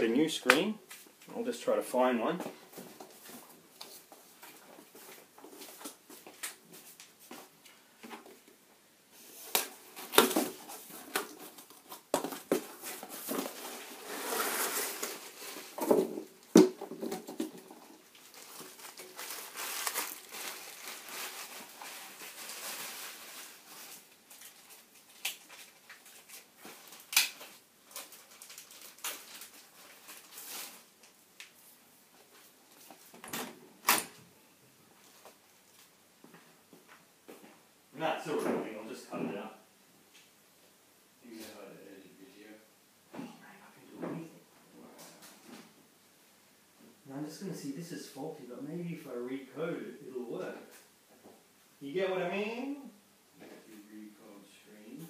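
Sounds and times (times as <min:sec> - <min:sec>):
packaging rustling and crinkling: 0:09.3 - 0:31.2.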